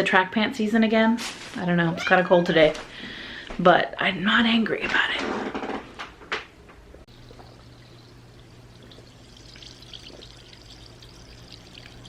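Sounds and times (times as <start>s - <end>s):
sparkling water fizzing: 7.1s - 12.0s.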